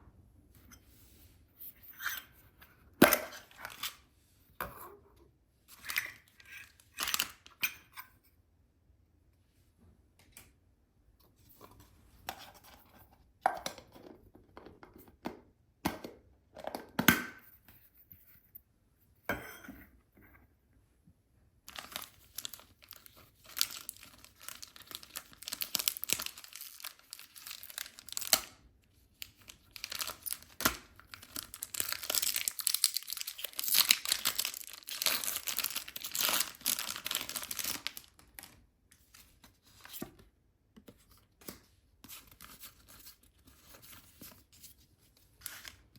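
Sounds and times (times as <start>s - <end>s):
plastic wrapping torn and crinkled: 21.7s - 28.6s, 29.2s - 38.6s.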